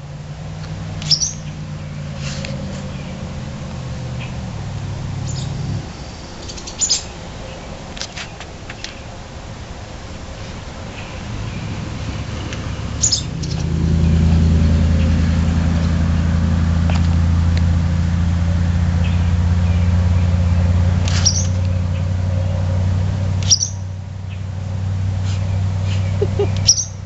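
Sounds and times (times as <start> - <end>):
low motor hum: 0.0 - 6.7, 9.2 - 27.0
swallow chirps: 5.2 - 7.1, 11.0 - 13.7, 25.2 - 27.0.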